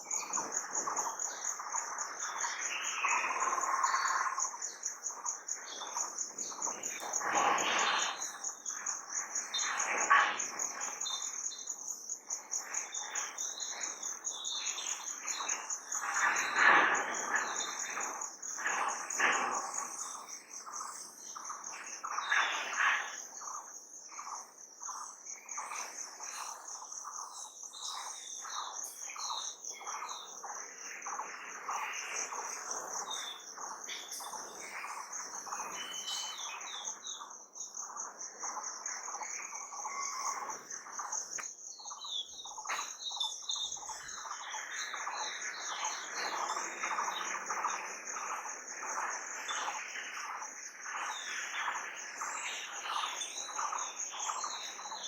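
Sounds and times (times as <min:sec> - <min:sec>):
high pulsing insect trill: 0:00.0 - 0:55.0
birds chirping and calling: 0:24.8 - 0:55.0.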